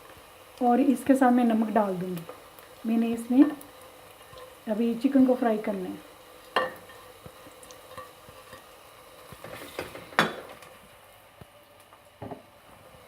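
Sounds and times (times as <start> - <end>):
paste frying in oil: 0.0 - 13.0.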